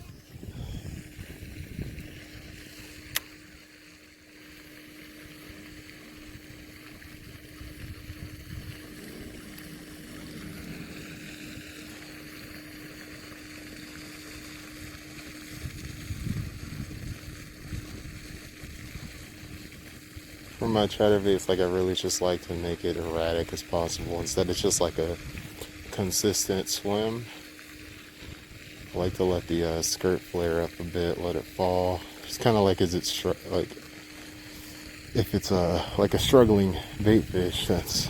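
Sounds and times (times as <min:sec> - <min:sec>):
wind buffeting microphone: 0:00.0 - 0:02.6, 0:07.1 - 0:11.2, 0:15.5 - 0:20.0
steady low hum: 0:00.0 - 0:38.0.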